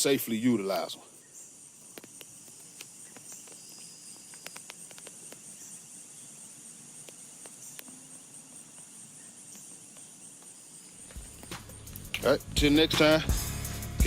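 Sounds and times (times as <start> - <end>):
crickets chirping: 0.0 - 14.0
faint sharp clicks: 1.8 - 5.5.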